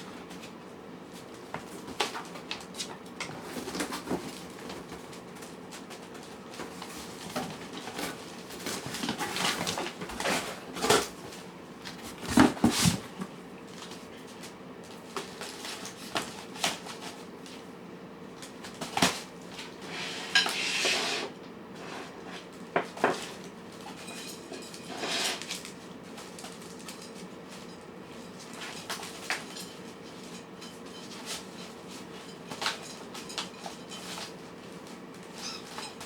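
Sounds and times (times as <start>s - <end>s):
food bowls clinking and scraping: 23.9s - 25.4s.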